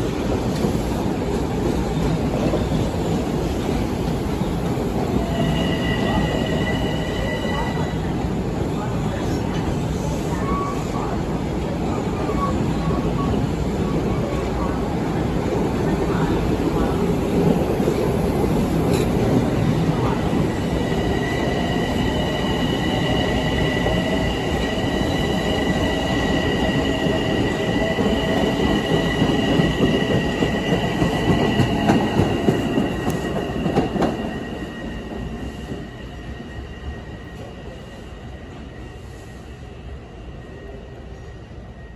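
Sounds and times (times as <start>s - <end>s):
train rumbling on rails: 0.0s - 41.9s.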